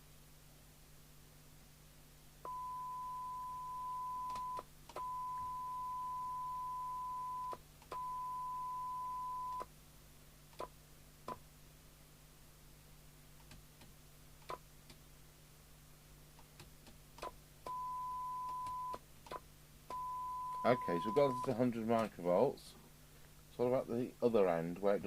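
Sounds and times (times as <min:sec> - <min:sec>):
test tone through radio speaker: 0:19.9 - 0:21.6.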